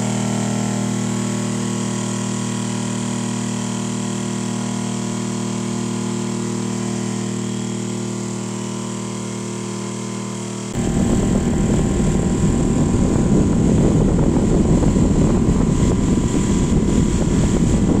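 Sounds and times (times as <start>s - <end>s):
electric fan motor hum: 0.0s - 18.0s
loud rough rushing noise: 10.8s - 18.0s.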